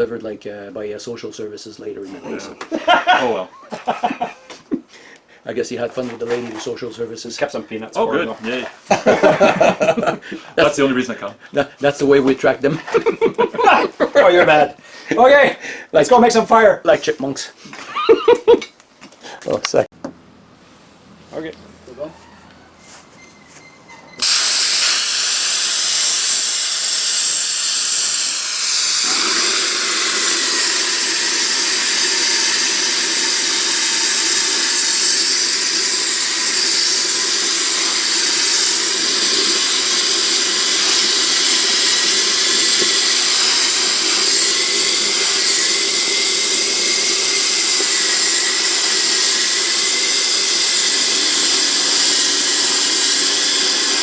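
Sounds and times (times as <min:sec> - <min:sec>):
plasma cutter hissing: 0:24.2 - 0:54.0.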